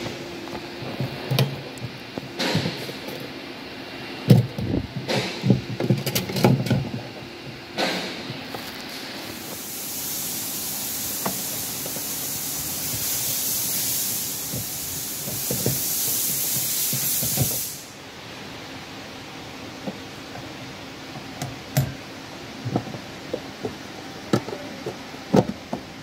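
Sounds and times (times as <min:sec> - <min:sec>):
spraying hiss: 0:07.8 - 0:18.0.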